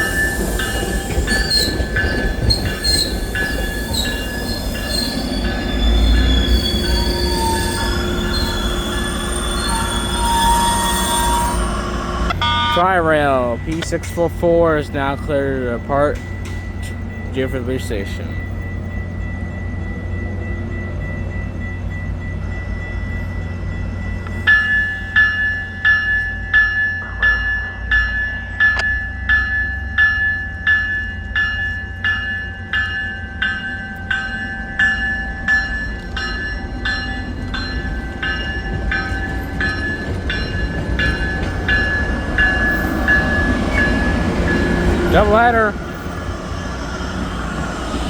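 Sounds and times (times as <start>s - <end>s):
railroad bell ringing: 0.0s - 48.0s
diesel locomotives idling: 11.0s - 19.2s, 30.7s - 48.0s.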